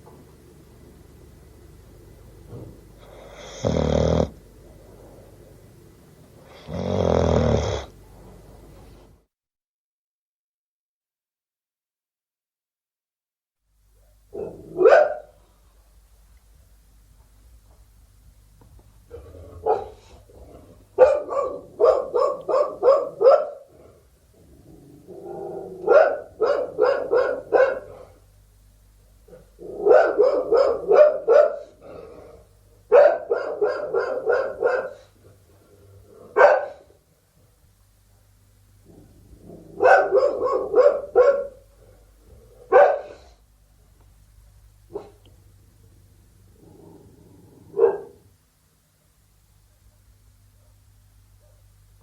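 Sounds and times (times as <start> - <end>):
dog barking: 14.3 - 15.4, 19.1 - 20.2, 21.0 - 23.7, 25.8 - 28.2, 29.3 - 32.0, 32.9 - 35.1, 36.2 - 37.0, 39.7 - 41.7, 42.6 - 43.4, 44.9 - 45.3, 47.7 - 48.3, 49.9 - 51.7.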